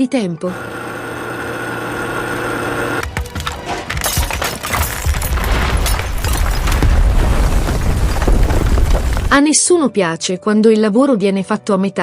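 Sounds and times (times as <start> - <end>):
structure cracking and splintering: 3.0 - 9.4.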